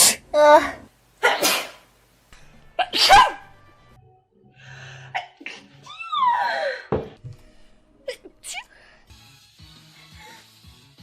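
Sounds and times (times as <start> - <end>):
person sneezing: 0.0 - 1.9, 2.8 - 3.5.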